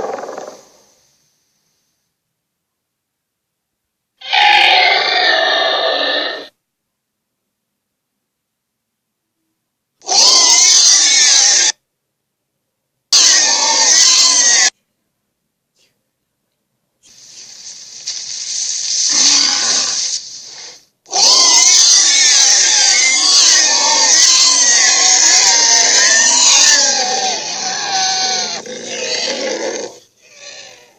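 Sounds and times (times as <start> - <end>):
wavering monster roar: 4.2 - 6.5, 13.2 - 14.7, 21.1 - 30.9
monster growl: 21.1 - 30.9.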